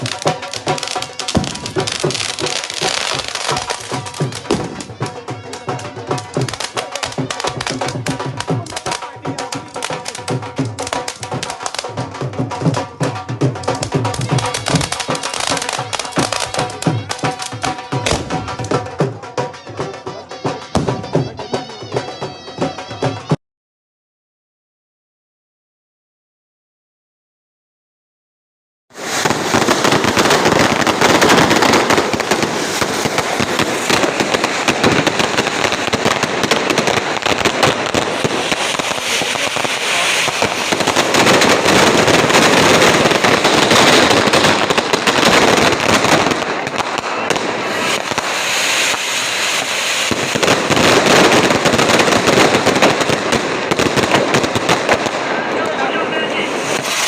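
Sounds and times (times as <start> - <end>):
fireworks bangs and crackles: 0.0 - 23.4, 28.9 - 57.0.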